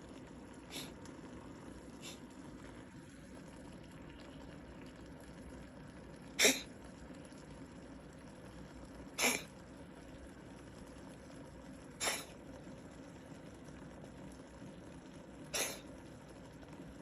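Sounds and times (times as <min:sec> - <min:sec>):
cat coughing: 0:06.4 - 0:06.7, 0:09.2 - 0:09.5, 0:12.0 - 0:12.4, 0:15.5 - 0:15.9.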